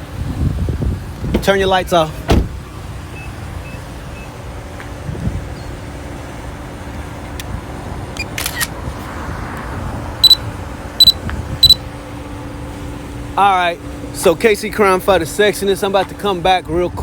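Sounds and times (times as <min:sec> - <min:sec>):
high-pitched electronic beep: 0:11.0 - 0:11.8.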